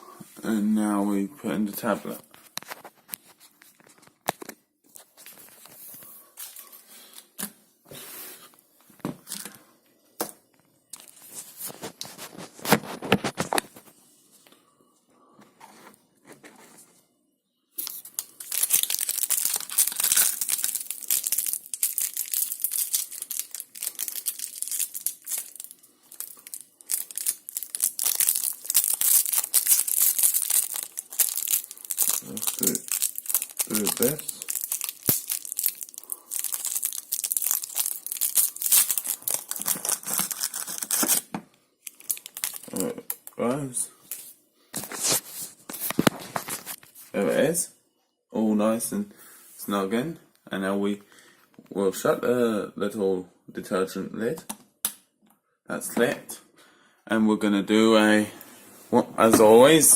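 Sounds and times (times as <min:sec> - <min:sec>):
wrapper tearing: 0:17.8 - 0:43.4
wrapper rustling and crinkling: 0:17.8 - 0:47.2.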